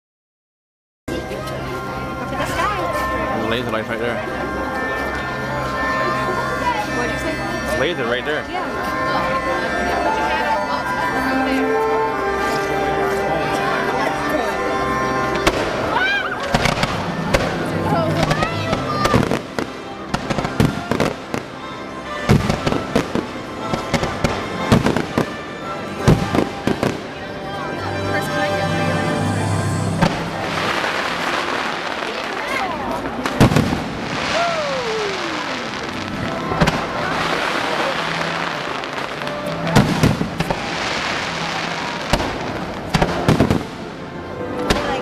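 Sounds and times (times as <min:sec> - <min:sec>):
show music: 0:01.1 - 0:45.0
fireworks bangs and crackles: 0:15.4 - 0:27.2, 0:29.9 - 0:45.0.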